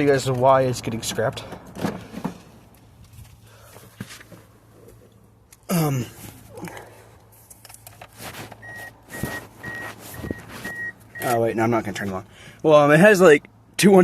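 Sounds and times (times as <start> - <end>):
warning chime beeping: 8.6 - 11.4.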